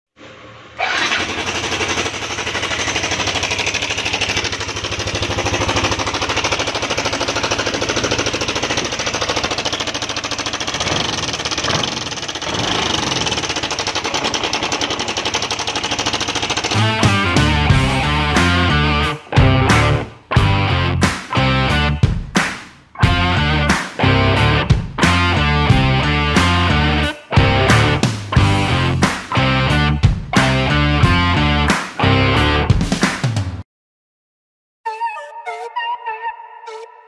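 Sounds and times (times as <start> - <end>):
scooter engine rattling: 0.8 - 20.0.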